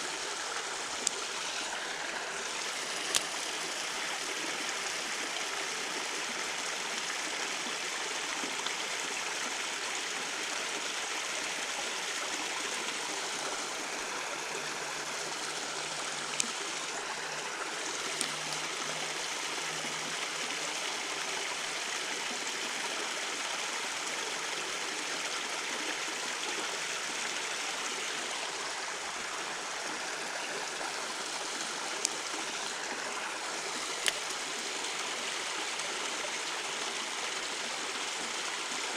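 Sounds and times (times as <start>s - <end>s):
creek water running: 0.0s - 38.9s.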